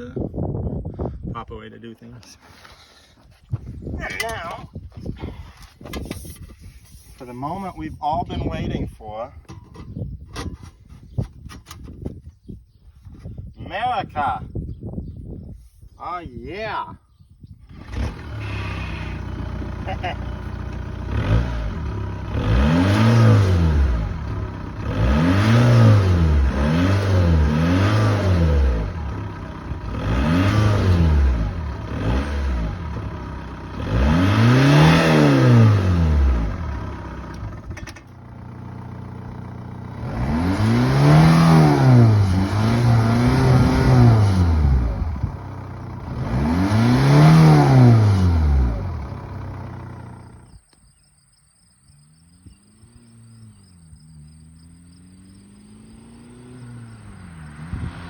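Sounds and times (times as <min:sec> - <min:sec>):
car engine revving: 0:17.7 - 0:37.7, 0:38.4 - 0:50.5, 0:52.1 - 0:58.0.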